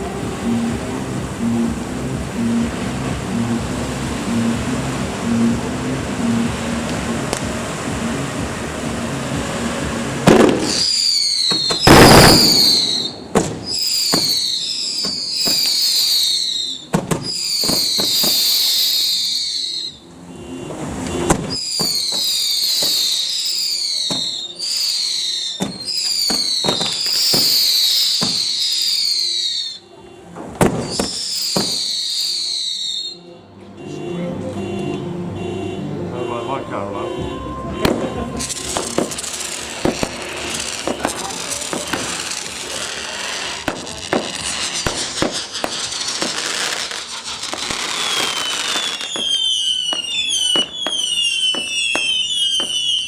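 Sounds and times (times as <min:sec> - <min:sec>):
firework cracking bangs: 0:05.6 - 0:19.9, 0:20.7 - 0:29.7, 0:30.4 - 0:32.6, 0:37.8 - 0:53.0
whistling firework shots: 0:10.2 - 0:29.9, 0:30.6 - 0:33.2, 0:37.8 - 0:53.0.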